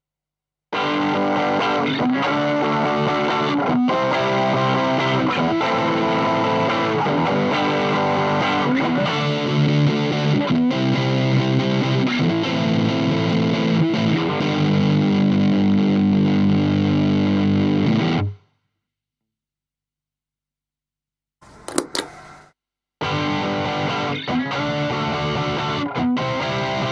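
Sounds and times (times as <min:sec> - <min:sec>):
distorted electric guitar chords: 0:00.8 - 0:18.2.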